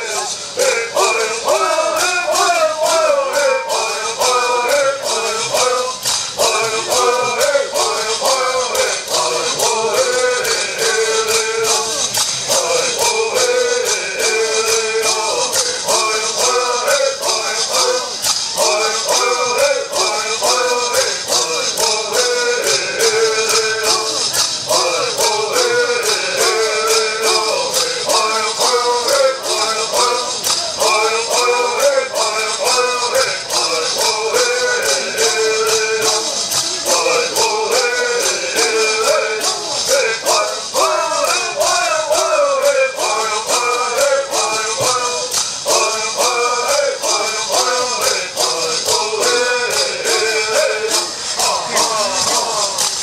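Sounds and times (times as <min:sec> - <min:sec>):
gourd rattles shaking: 0:00.0 - 0:53.0
men singing together: 0:00.0 - 0:53.0.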